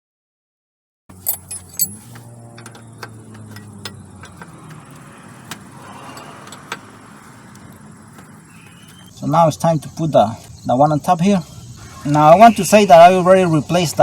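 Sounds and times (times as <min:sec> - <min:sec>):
metal clinks: 0:01.1 - 0:04.8
metal tools clicking: 0:01.1 - 0:04.8.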